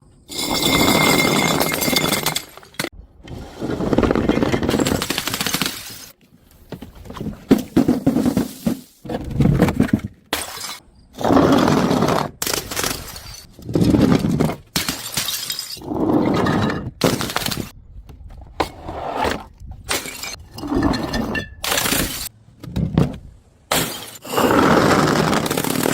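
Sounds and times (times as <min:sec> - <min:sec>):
glass bottles smashing: 0:00.3 - 0:02.9, 0:10.4 - 0:10.8, 0:14.7 - 0:15.8, 0:19.9 - 0:22.3, 0:23.7 - 0:24.5.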